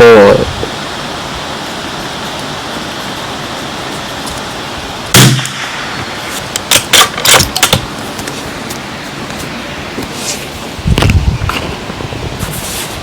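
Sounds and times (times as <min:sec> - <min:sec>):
wind noise on microphone: 0:00.0 - 0:13.0
rifle shot: 0:05.1 - 0:06.0.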